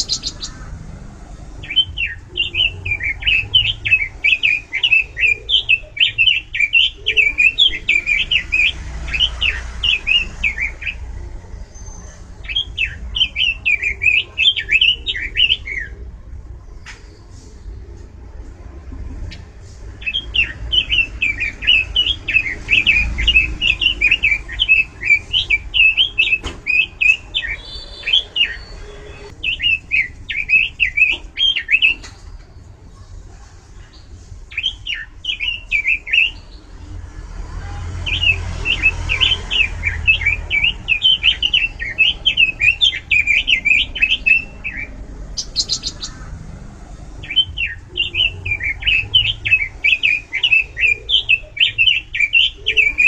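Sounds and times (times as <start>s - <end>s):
bird singing high warbling notes: 0.0s - 0.8s, 1.6s - 16.0s, 20.0s - 32.2s, 38.0s - 46.4s, 47.2s - 53.0s.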